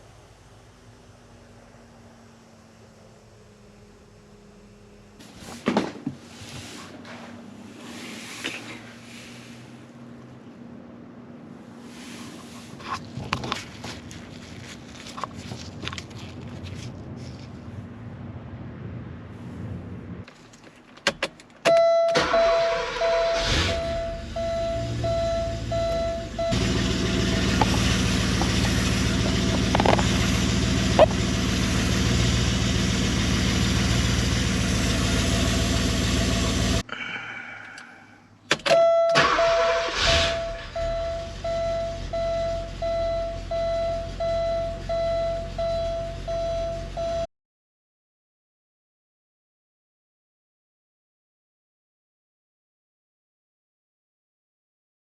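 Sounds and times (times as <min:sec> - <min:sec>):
car engine cranking and running: 0:20.4 - 0:36.8, 0:38.5 - 0:47.2
warning chime beeping: 0:21.8 - 0:26.6.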